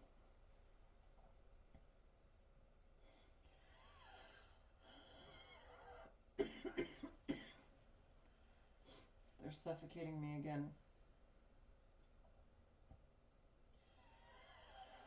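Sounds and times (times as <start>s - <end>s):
woman coughing: 6.4s - 7.6s.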